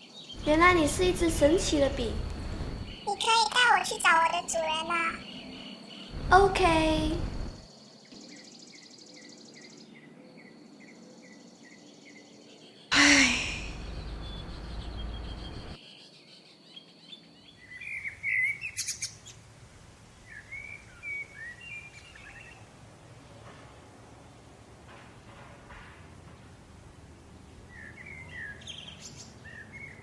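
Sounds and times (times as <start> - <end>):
birds chirping: 0.4 - 3.2, 5.0 - 7.7, 12.9 - 15.8
person sighing loudly: 12.9 - 14.5.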